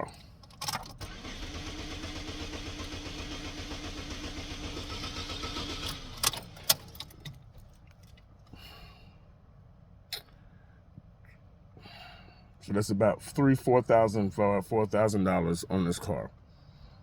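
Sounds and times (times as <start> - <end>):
engine cranking with starter whine: 0.6 - 7.4.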